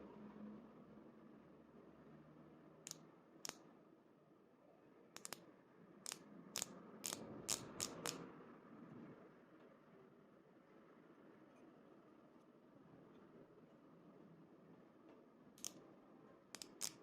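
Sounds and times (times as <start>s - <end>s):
sharp short clicks: 5.2s - 5.4s, 6.1s - 8.2s, 15.6s - 15.8s, 16.6s - 17.0s.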